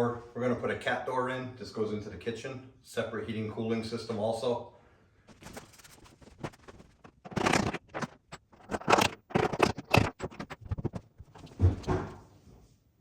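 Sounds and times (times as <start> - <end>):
scraping and rubbing on wood: 5.3 - 12.2.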